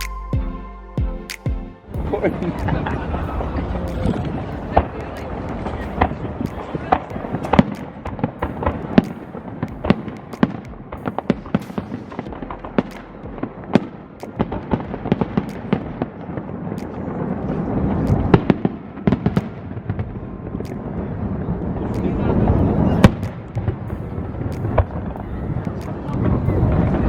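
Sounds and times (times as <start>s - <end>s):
low rumble: 1.9s - 9.0s, 10.7s - 14.2s, 20.0s - 27.0s
firework cracks and bangs: 2.0s - 27.0s.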